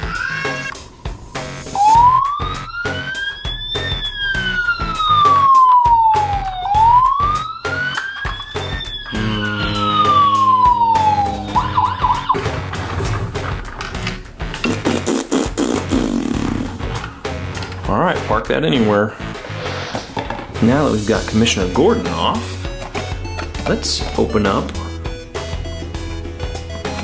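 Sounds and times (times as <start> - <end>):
background music: 0.0 - 27.0
toy police siren wailing: 1.7 - 12.5.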